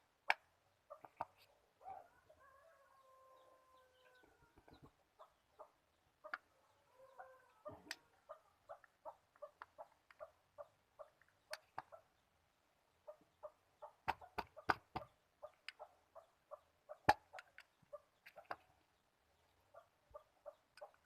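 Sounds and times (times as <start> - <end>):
rooster crowing: 1.8 - 4.7, 6.8 - 7.9
sharp clicks and taps: 14.0 - 15.8.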